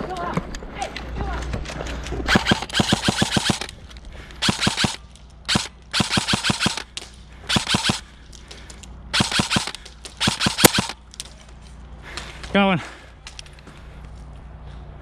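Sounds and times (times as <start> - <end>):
airsoft guns firing bursts: 2.3 - 3.7, 4.4 - 8.2, 9.1 - 11.0.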